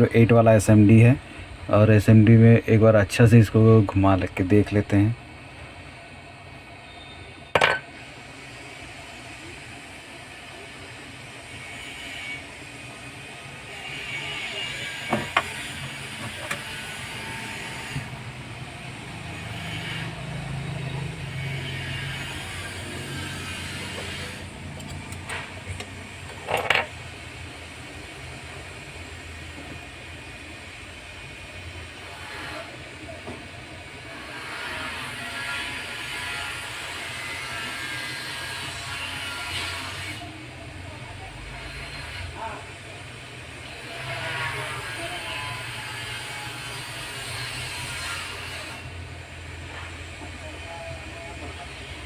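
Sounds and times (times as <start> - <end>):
hot air station blowing: 6.5 - 35.1.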